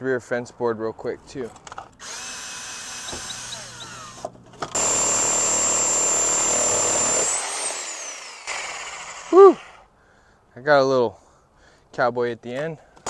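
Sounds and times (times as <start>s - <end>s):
reciprocating saw cutting: 2.0s - 9.9s.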